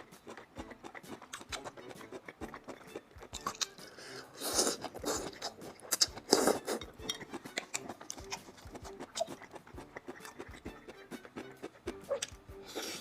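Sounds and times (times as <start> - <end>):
cutlery clinking on a dish: 6.5 - 8.4.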